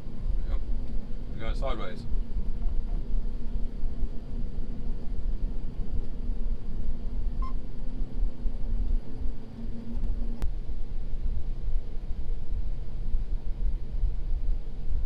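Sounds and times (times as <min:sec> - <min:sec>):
combine harvester engine rumble: 0:00.0 - 0:15.0
short electronic beep: 0:07.4 - 0:07.6.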